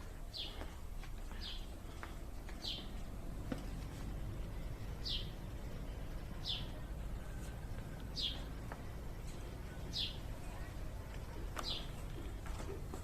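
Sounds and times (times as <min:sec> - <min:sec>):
low steady rumble: 0:00.0 - 0:13.0
small bird calling: 0:08.1 - 0:08.5.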